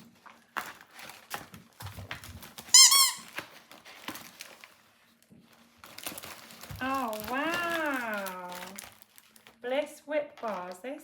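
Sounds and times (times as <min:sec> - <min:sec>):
gift packaging rustling: 0:00.0 - 0:11.0
squeaky dog toy squeaking: 0:02.7 - 0:03.3.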